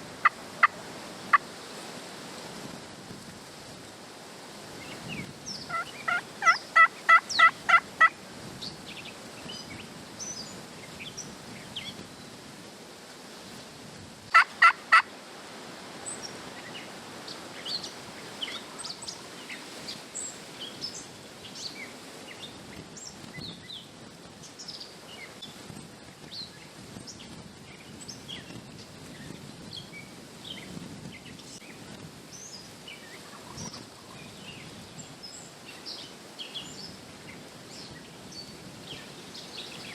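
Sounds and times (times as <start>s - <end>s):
turkey yelping: 0.2s - 1.4s, 5.7s - 8.2s, 14.3s - 15.1s
small birds chirping: 16.0s - 39.9s.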